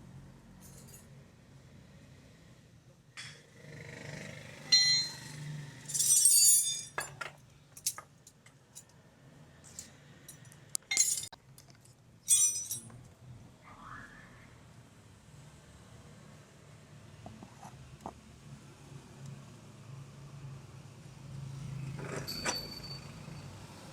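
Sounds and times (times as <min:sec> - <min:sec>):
metal hand tools clinking: 0:05.9 - 0:08.0, 0:09.7 - 0:11.4, 0:12.3 - 0:12.9.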